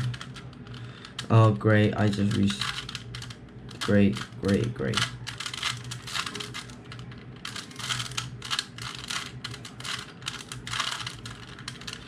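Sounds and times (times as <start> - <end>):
plastic puzzle cube clicking: 2.1 - 12.0.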